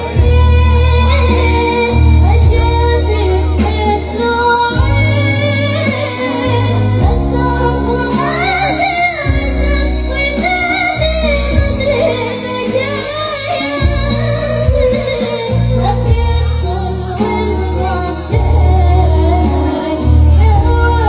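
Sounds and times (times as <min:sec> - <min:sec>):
music with held bass notes: 0:00.0 - 0:21.0
woman singing: 0:00.0 - 0:21.0.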